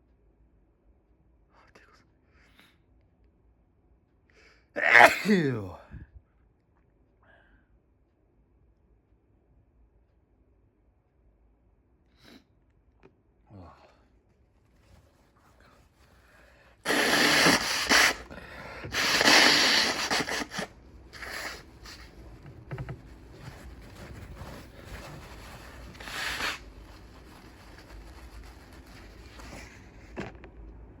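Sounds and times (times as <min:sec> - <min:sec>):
person blowing nose: 0:16.8 - 0:22.1, 0:25.8 - 0:26.8.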